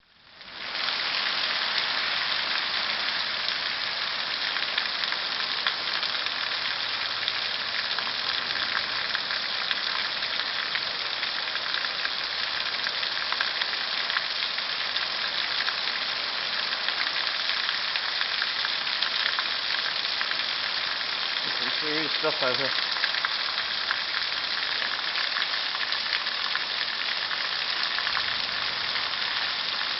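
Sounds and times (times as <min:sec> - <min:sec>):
heavy rain: 0:00.0 - 0:29.9.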